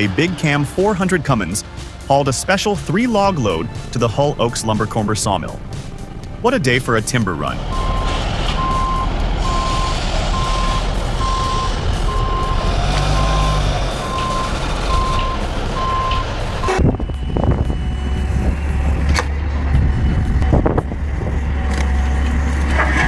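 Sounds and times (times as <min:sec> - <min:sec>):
engine rumble: 0:00.0 - 0:23.0
loud machinery noise: 0:00.0 - 0:23.0
backup alarm beeping: 0:07.7 - 0:20.8.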